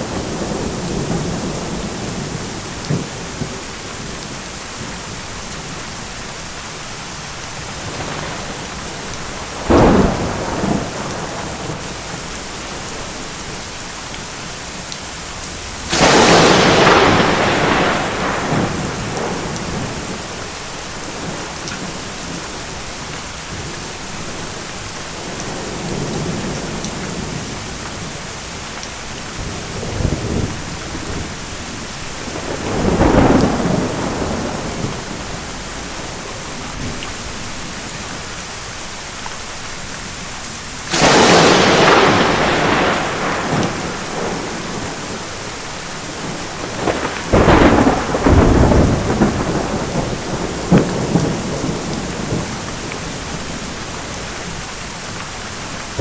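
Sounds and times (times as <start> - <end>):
heavy rain: 0.0 - 56.0
thunder rumbling and cracking: 7.6 - 13.6, 15.5 - 22.6, 25.2 - 38.1, 40.9 - 56.0.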